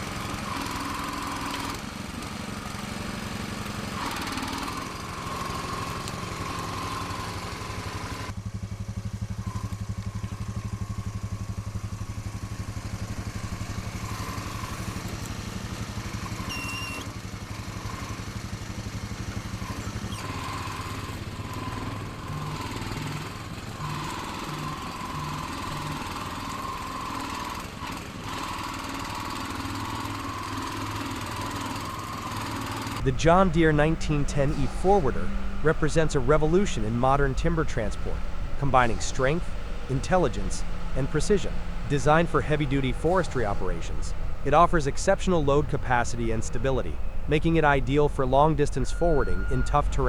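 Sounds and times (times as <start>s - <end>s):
small engine running: 0.0s - 50.0s.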